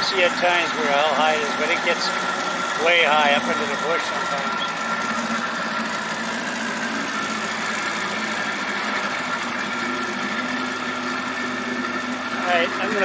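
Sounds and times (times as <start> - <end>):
outboard motor droning: 0.0 - 13.0.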